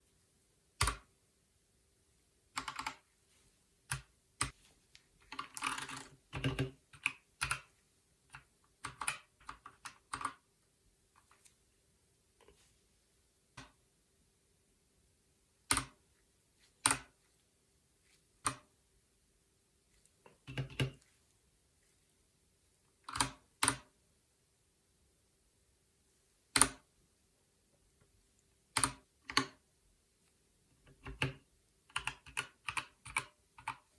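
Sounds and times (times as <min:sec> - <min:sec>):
mechanical keyboard keystrokes: 0:05.3 - 0:07.7.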